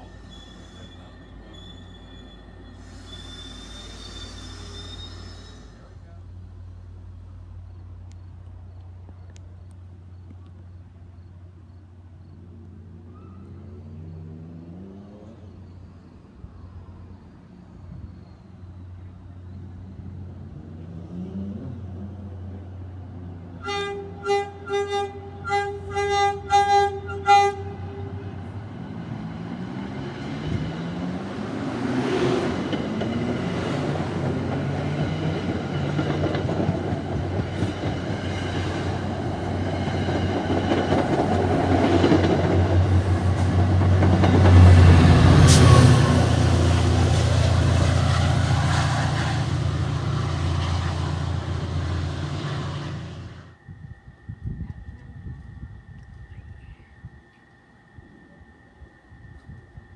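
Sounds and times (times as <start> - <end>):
high wheel squeal: 0.0 - 6.2, 43.0 - 53.5
train passing: 0.0 - 59.9
train horn short blasts: 23.6 - 28.6, 45.4 - 46.3.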